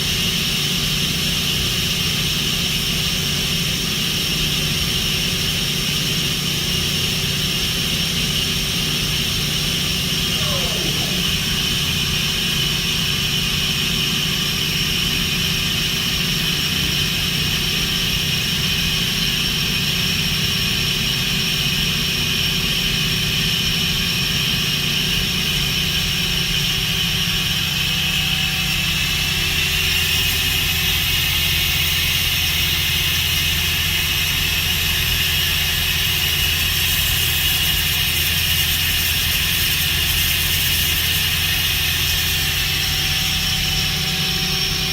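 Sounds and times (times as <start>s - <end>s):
high machine whine: 0.0s - 44.9s
machine hum: 8.5s - 19.4s, 25.5s - 35.9s, 41.0s - 44.9s.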